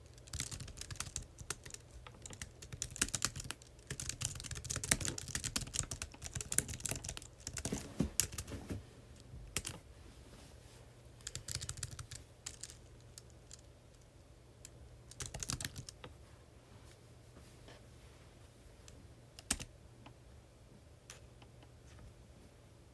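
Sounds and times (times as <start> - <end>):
faint low hum: 0.0 - 22.9
keyboard typing clicks: 19.4 - 20.2.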